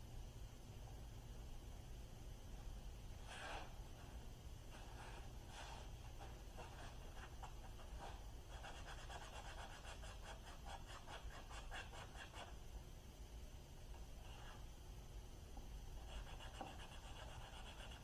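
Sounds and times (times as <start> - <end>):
low steady hum: 0.0 - 18.0
faint rapid scratching: 4.7 - 12.6, 16.0 - 18.0.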